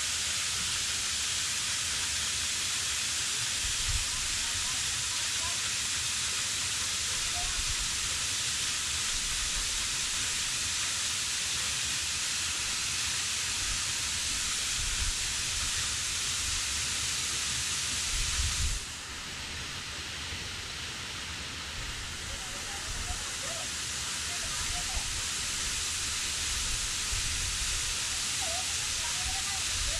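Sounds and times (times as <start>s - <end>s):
waterfall rushing: 21.4s - 29.9s.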